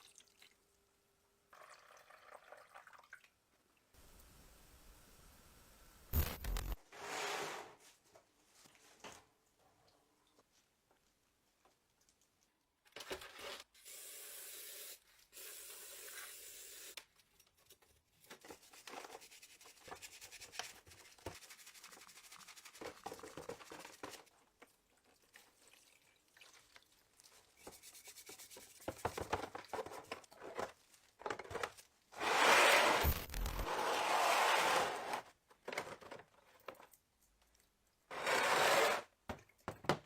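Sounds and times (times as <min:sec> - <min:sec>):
burst of noise: 0:06.1 - 0:06.8.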